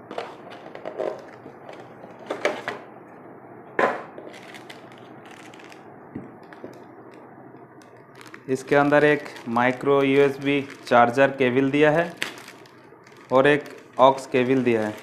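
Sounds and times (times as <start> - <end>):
packaging knocks and rustles: 12.0 - 15.0.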